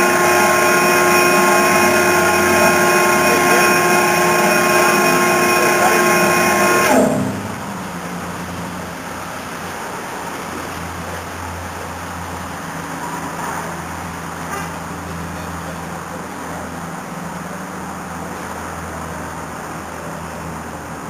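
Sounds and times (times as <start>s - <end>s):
high whining machine winding down: 0.0s - 9.6s
steady low rumble: 0.0s - 21.0s.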